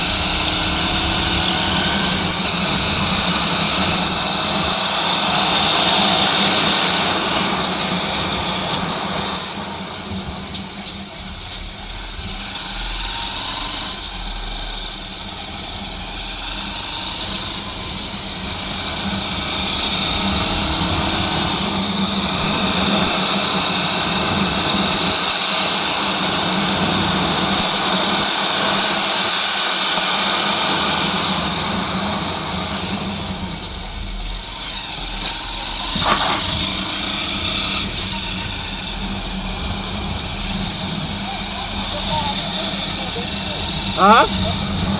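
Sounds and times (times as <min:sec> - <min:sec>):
motorcycle engine running: 0:00.0 - 0:44.9.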